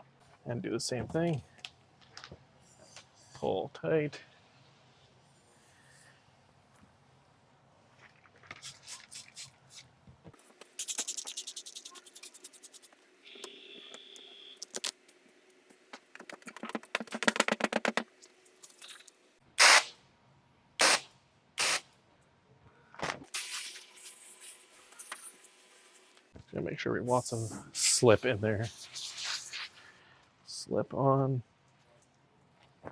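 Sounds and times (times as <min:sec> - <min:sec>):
spray bottle squirts: 0:08.6 - 0:09.8, 0:10.6 - 0:13.6, 0:21.6 - 0:21.8, 0:23.3 - 0:26.0, 0:28.6 - 0:30.0.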